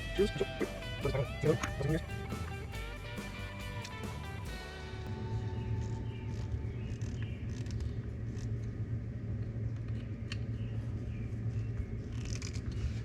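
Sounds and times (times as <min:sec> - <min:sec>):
car engine idling: 0:00.0 - 0:10.2.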